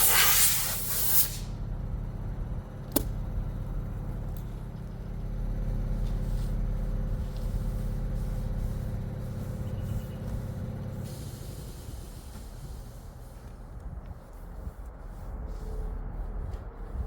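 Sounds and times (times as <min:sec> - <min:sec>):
air hissing: 0:00.0 - 0:01.6, 0:06.1 - 0:13.8
low machine drone: 0:01.3 - 0:17.0.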